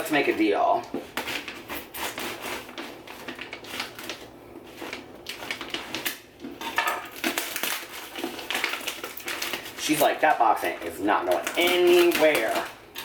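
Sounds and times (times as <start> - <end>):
knife cutting packing tape: 1.1 - 4.2, 11.2 - 12.8.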